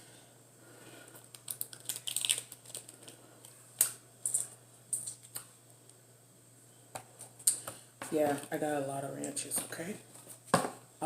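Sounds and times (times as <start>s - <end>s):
food packaging crackling: 1.0s - 5.6s.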